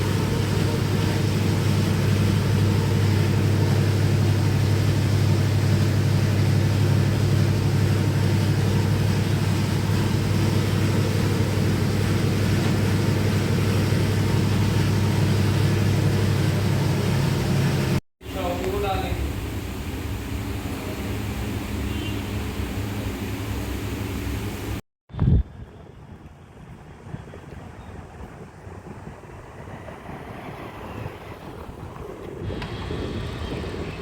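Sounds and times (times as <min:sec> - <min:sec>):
machine hum: 0:00.0 - 0:24.8.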